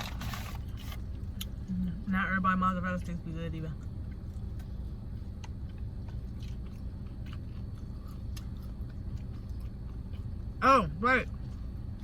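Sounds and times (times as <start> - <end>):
person chewing food: 0.0 - 1.7, 3.8 - 10.6, 11.2 - 12.0
steady low hum: 0.0 - 12.0.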